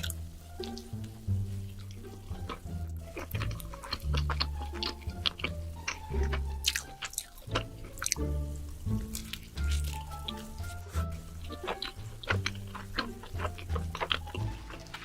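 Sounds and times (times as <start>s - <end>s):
background music with low bass: 0.0s - 15.0s
wet chewing and mouth clicks: 0.0s - 15.0s.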